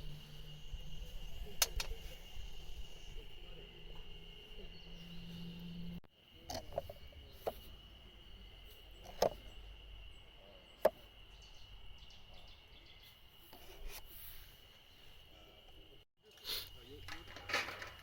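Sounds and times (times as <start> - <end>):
insects trilling: 0.0 - 18.0
sharp clicks: 1.6 - 2.0.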